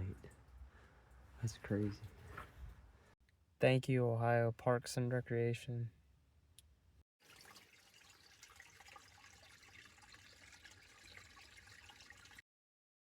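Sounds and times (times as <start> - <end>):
water trickling and dripping: 7.2 - 12.4.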